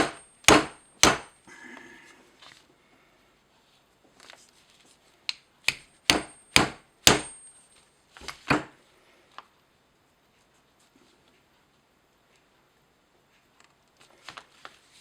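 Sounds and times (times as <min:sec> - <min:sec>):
hammer tapping metal: 0:00.0 - 0:01.3, 0:05.7 - 0:07.6
faint high metallic ring: 0:07.3 - 0:08.1.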